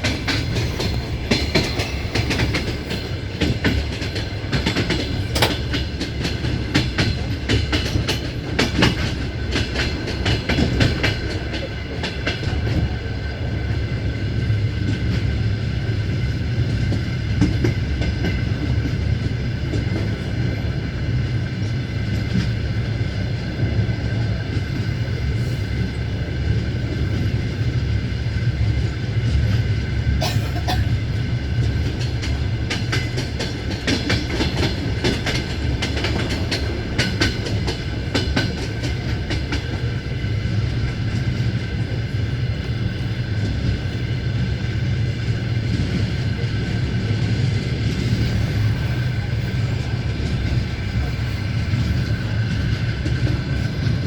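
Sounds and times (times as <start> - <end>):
wheels clacking over rail joints: 0.0 - 13.0, 29.2 - 42.0
train rumble: 0.0 - 54.0.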